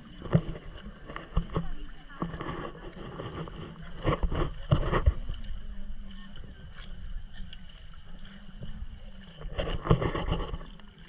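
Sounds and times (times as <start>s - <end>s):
boat hull and water rumble: 0.0s - 11.0s.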